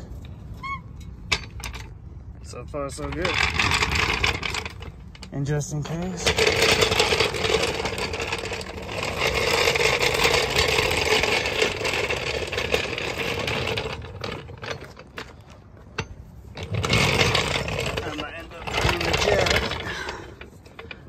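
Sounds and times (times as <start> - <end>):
rapid mechanical clatter: 6.2 - 15.3, 16.6 - 21.0.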